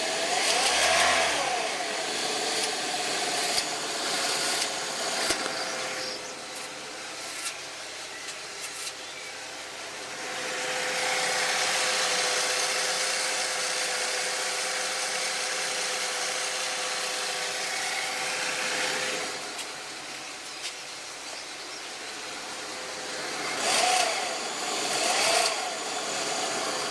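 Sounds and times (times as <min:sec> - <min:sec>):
car engine idling: 0:09.3 - 0:23.5.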